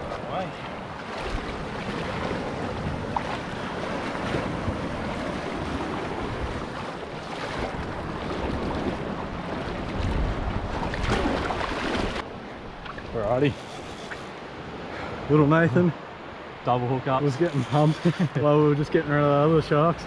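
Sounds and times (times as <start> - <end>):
wind buffeting microphone: 0.0 - 14.1
sea water washing: 0.0 - 14.4.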